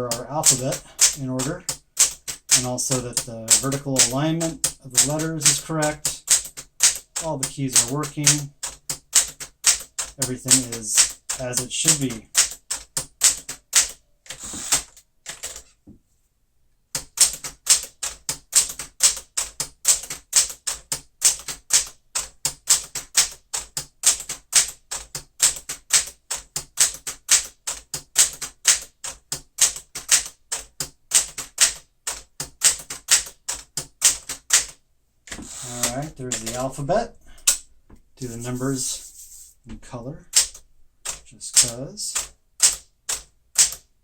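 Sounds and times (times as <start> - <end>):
manual typewriter keystrokes: 0.0 - 15.7, 17.0 - 37.6, 40.2 - 43.9.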